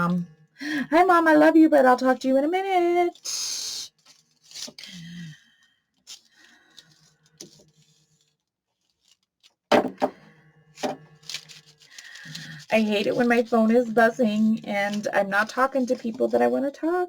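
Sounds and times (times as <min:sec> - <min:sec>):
paper being handled: 0:02.8 - 0:05.2, 0:05.9 - 0:09.7, 0:10.8 - 0:17.0
loud knocks: 0:09.7 - 0:10.2.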